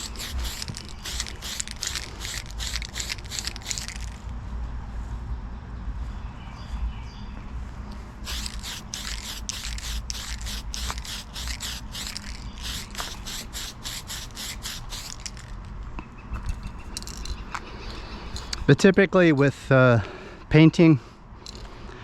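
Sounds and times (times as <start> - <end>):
spray can hissing: 0.0 - 4.2, 8.2 - 15.5.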